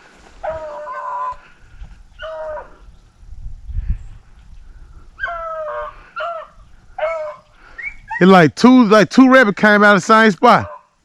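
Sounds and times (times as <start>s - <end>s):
dogs baying: 5.2s - 7.4s.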